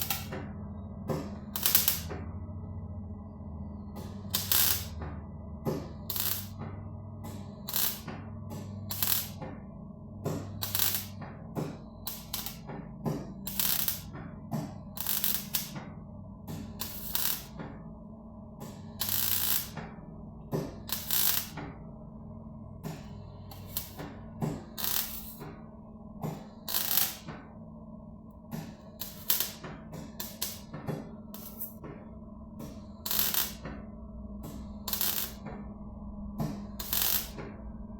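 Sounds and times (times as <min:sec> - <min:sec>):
welding arc crackle: 0:00.0 - 0:00.4, 0:01.6 - 0:02.2, 0:04.3 - 0:05.0, 0:06.1 - 0:06.6, 0:07.6 - 0:08.1, 0:08.9 - 0:09.4, 0:10.6 - 0:11.2, 0:12.1 - 0:12.6, 0:13.5 - 0:14.1, 0:15.0 - 0:15.8, 0:16.8 - 0:17.6, 0:19.0 - 0:19.8, 0:20.8 - 0:21.6, 0:23.6 - 0:24.1, 0:24.8 - 0:25.4, 0:26.7 - 0:27.3, 0:29.0 - 0:30.7, 0:31.4 - 0:31.8, 0:33.0 - 0:33.7, 0:34.8 - 0:35.5, 0:36.8 - 0:37.4.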